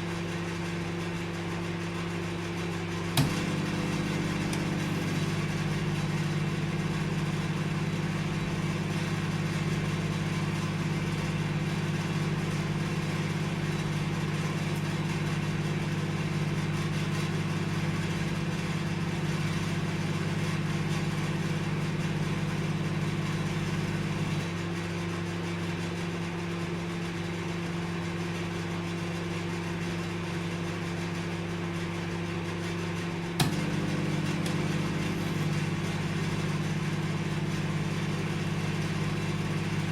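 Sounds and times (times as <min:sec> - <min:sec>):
microwave oven humming: 0:00.0 - 0:39.9
sharp click: 0:03.2 - 0:03.6.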